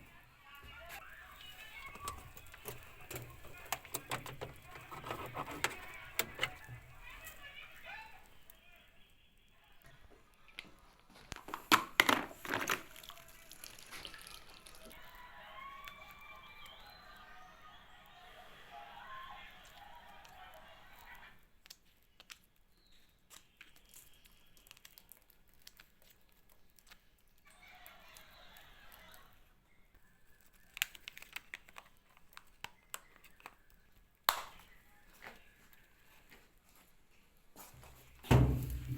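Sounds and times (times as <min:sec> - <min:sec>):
light clicks and taps: 0:01.4 - 0:07.4.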